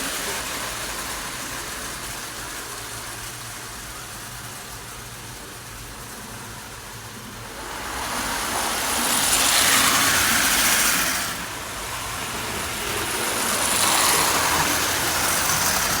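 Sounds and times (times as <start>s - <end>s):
toy train rattling whir: 0.0s - 16.0s.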